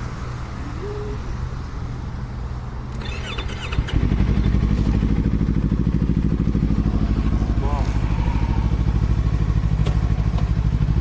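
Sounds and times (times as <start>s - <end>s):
motorcycle engine idling: 3.0s - 11.0s.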